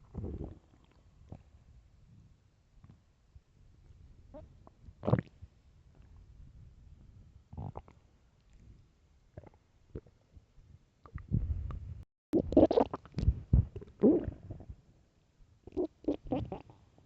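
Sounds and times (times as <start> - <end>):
stomach growling: 0.0 - 1.5, 4.3 - 5.4, 7.5 - 8.0, 9.4 - 10.2, 12.4 - 14.8, 15.7 - 16.8.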